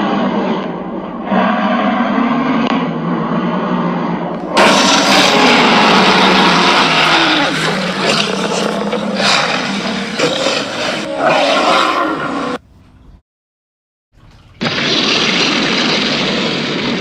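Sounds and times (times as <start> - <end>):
dinosaur roar: 0.0 - 12.6.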